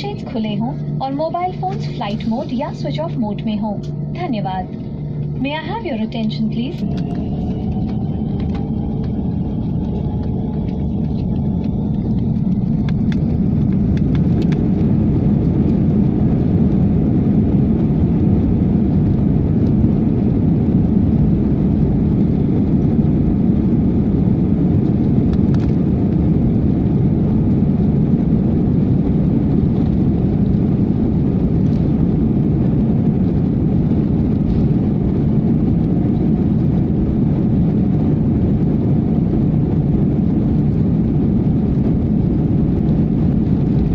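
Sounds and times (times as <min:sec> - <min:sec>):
jet engines spooling up: 0:00.0 - 0:43.9.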